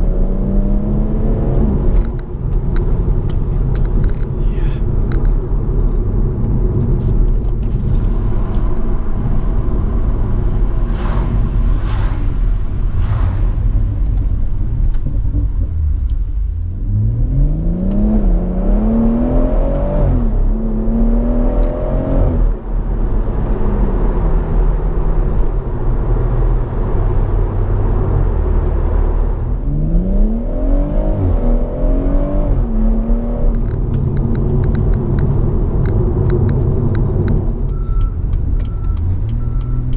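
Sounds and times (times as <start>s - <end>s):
car cruising from cabin: 0.0s - 39.9s
car engine accelerating: 5.3s - 39.9s.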